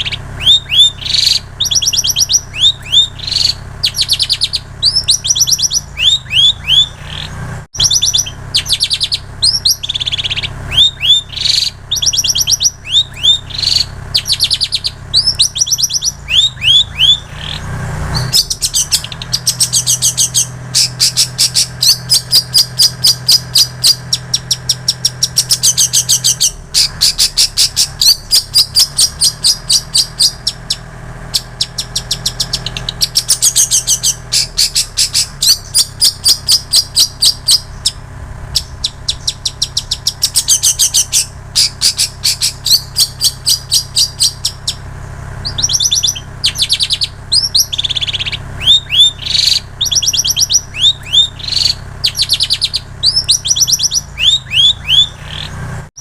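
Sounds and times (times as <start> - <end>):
bird repeated chirps: 0.0 - 56.0
bird singing whistled notes: 0.0 - 56.0
low hum: 0.0 - 56.0.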